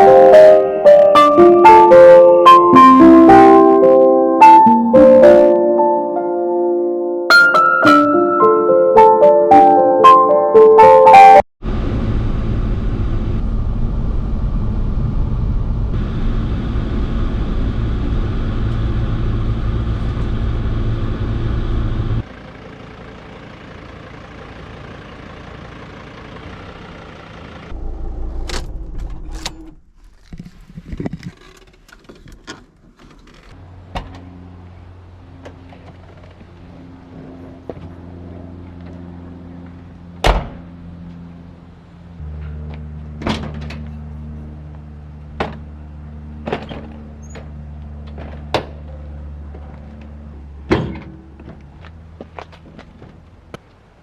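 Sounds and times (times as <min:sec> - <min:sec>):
van rumbling: 0:07.5 - 0:54.0.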